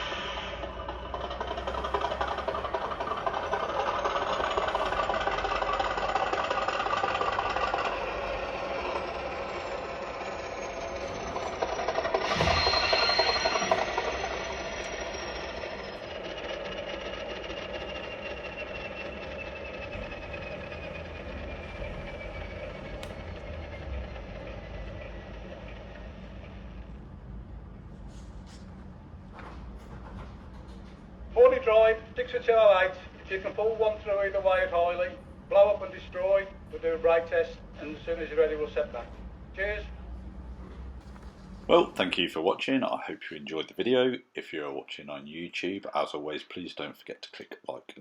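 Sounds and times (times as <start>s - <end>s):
turbocharger whistle: 0.0s - 26.9s
diesel engine sound from speaker: 0.0s - 42.4s.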